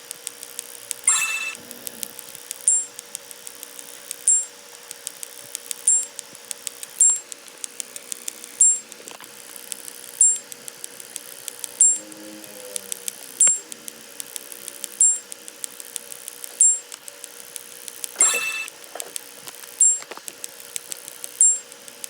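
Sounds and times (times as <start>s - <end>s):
chime-like ring: 1.1s - 1.6s, 18.2s - 18.7s
high two-note electronic blip: 1.1s - 1.9s, 18.2s - 18.7s
steady electronic hum: 1.1s - 2.3s, 18.2s - 18.7s.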